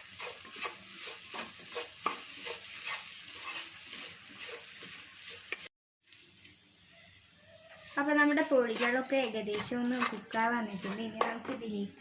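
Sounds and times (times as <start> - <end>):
spoon stirring and scraping pan: 0.0 - 6.5, 7.6 - 11.8
onions sizzling in hot oil: 0.0 - 11.9.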